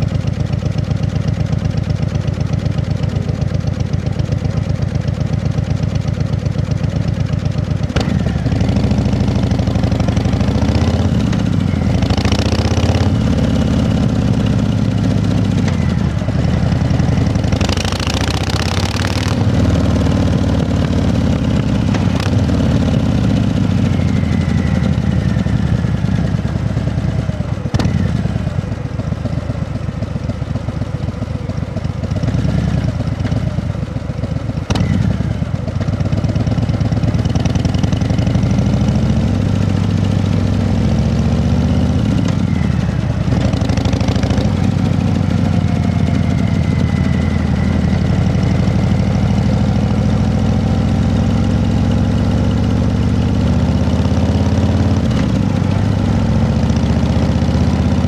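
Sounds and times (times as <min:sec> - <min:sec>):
engine running: 0:00.0 - 0:58.0.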